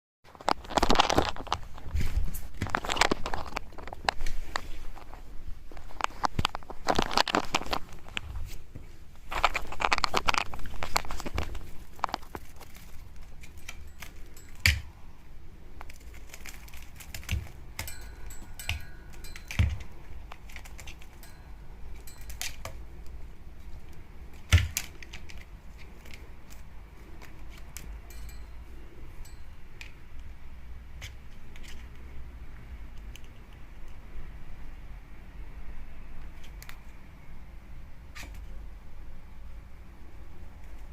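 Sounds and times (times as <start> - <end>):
cat toy rustling and crinkling: 0.3 - 15.0, 15.6 - 29.3.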